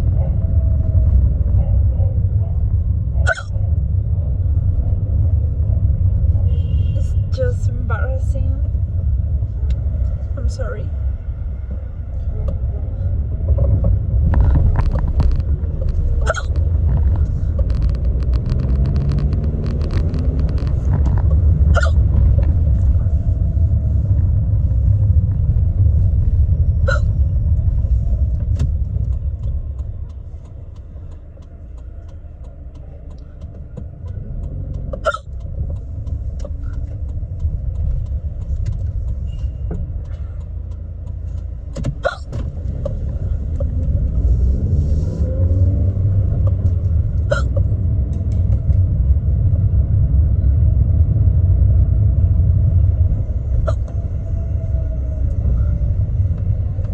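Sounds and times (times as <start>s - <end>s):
car cabin rumble: 0.0s - 56.9s
woman hiccuping: 3.2s - 3.6s, 16.2s - 16.6s, 21.7s - 22.0s, 26.9s - 27.1s, 35.0s - 35.3s, 42.0s - 42.3s, 53.6s - 53.9s.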